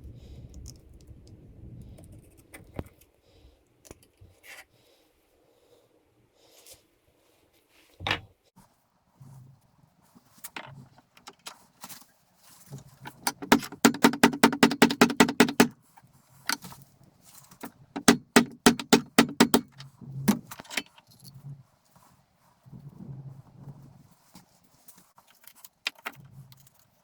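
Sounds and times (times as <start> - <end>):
metal parts clicking and rattling: 10.5 - 11.7, 13.0 - 15.8, 17.4 - 21.4, 25.2 - 26.9.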